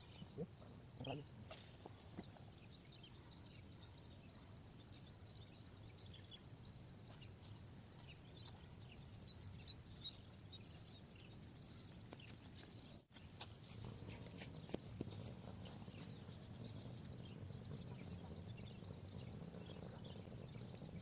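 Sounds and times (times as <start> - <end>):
faint chirps: 0.0 - 21.0
high insect trill: 0.0 - 21.0.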